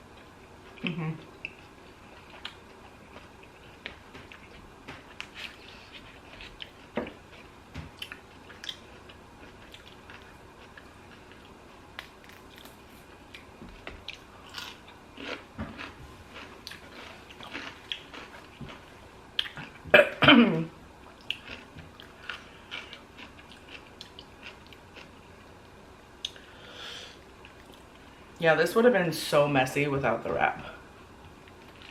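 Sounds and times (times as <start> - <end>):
person chewing and biting sandwich: 1.5 - 19.8.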